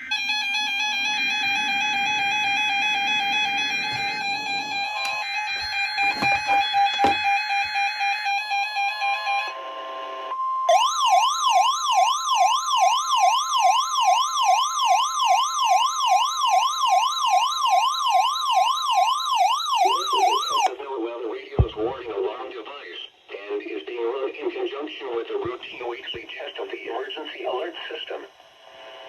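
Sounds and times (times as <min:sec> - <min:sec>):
warbling siren tone: 0:00.0 - 0:07.7.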